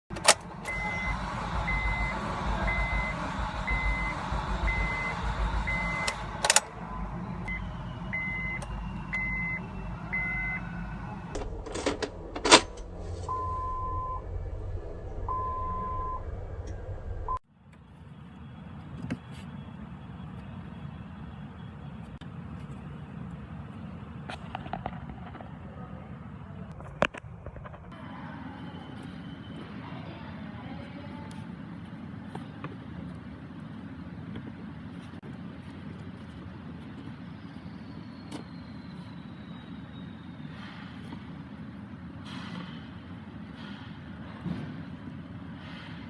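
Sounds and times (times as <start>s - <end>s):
low rumble: 0.1s - 17.5s, 24.0s - 28.3s
faint hum: 0.1s - 46.0s
car warning chime beeps: 0.6s - 11.3s, 13.3s - 14.2s
sharp clicks: 6.0s - 6.8s.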